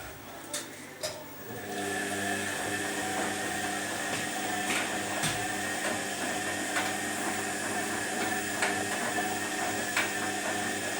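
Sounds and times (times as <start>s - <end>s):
washing machine motor hum: 0.0s - 10.9s.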